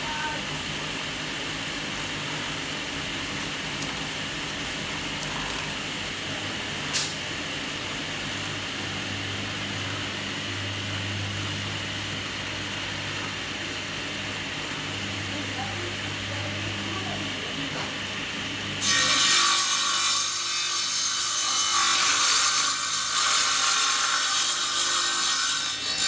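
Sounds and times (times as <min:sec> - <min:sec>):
machine hum and hiss: 0:00.0 - 0:19.2.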